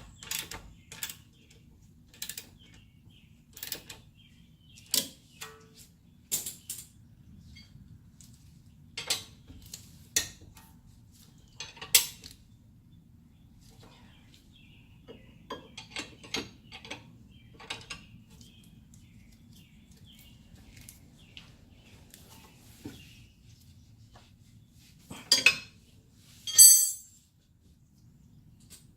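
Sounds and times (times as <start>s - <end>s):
metal tools clinking: 26.4s - 27.2s.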